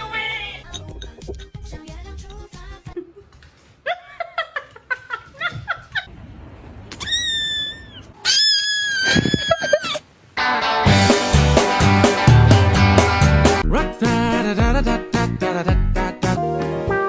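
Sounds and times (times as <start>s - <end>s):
music: 0.1s - 3.0s, 10.4s - 17.0s
long shrill screams: 7.0s - 10.0s
short squeaky cries: 7.0s - 10.0s.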